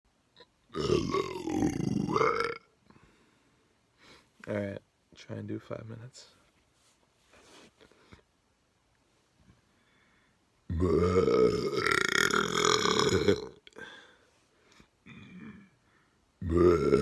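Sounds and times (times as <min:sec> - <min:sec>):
person burping: 0:00.7 - 0:02.7, 0:10.7 - 0:13.9, 0:15.0 - 0:15.8, 0:16.4 - 0:17.0.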